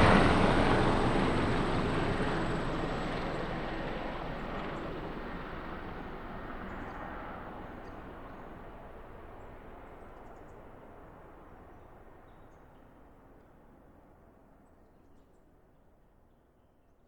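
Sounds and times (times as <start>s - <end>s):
helicopter flying away: 0.0s - 9.9s.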